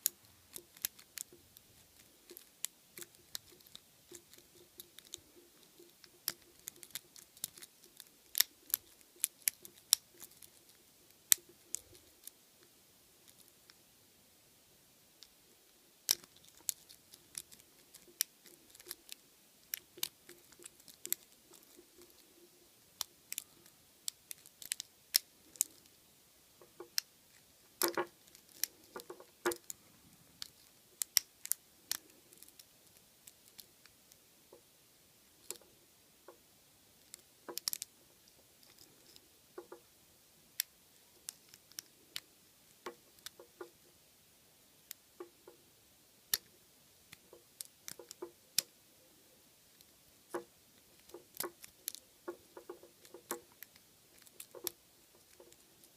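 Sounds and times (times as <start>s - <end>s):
lock pick clicking and scraping: 37.1s - 37.9s.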